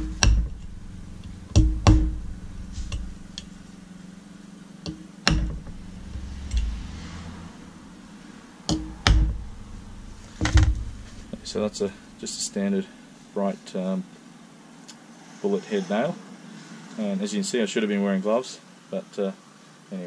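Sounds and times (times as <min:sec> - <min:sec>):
steady low hum: 0:00.0 - 0:13.5.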